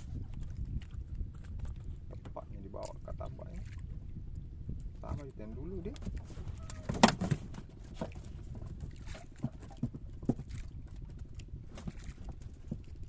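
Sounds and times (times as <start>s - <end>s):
steady low rumble: 0.0s - 13.0s
knocks on a boat: 6.1s - 10.6s.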